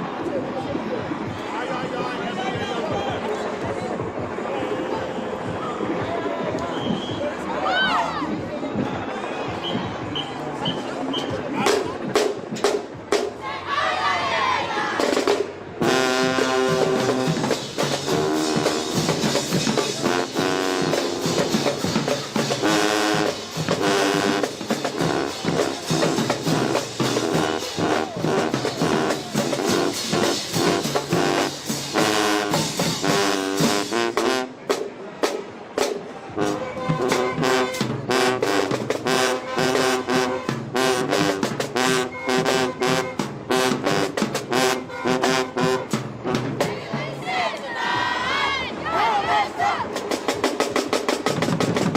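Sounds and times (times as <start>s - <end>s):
drum-line beat: 8.7s - 13.8s, 14.9s - 48.4s, 49.1s - 51.9s
brass horns playing chords: 15.8s - 34.7s, 36.3s - 46.6s.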